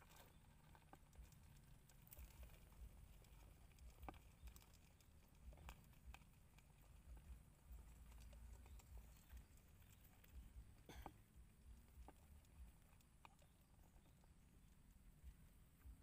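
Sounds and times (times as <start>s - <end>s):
faint low rumble: 0.0s - 16.0s.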